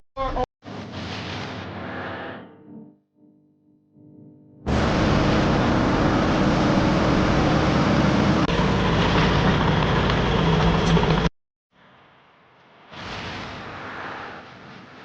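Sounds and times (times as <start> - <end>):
heavy machine engine running: 4.7 - 11.3.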